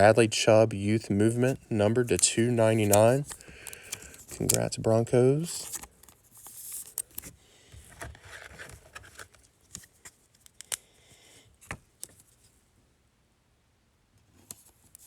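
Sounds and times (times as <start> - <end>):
trading cards rustling: 0.0 - 10.8.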